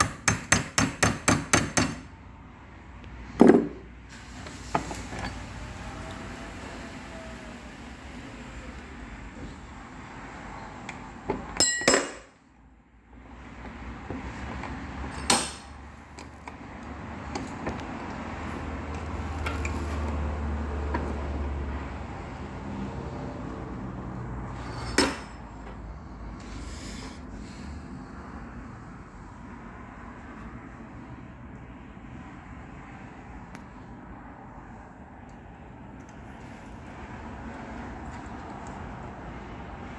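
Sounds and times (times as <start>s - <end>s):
metal tool knocks and clinks: 11.6s - 12.3s.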